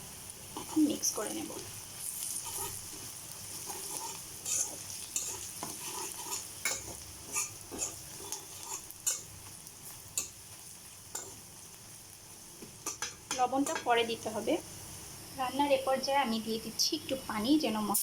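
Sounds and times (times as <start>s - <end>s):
onions sizzling in a pan: 0.0s - 18.0s
spatula scraping a pan: 0.6s - 1.1s, 2.0s - 10.4s, 11.1s - 11.4s.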